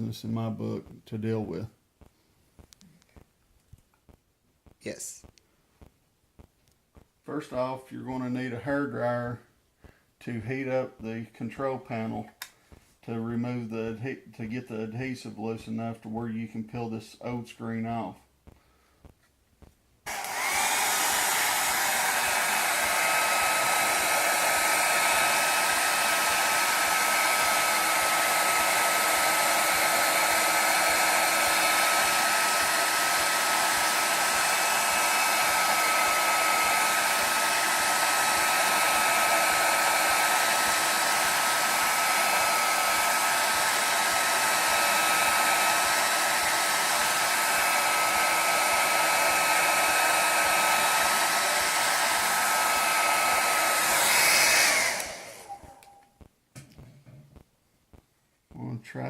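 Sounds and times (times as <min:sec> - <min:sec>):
hair dryer blowing: 0:20.1 - 0:56.0.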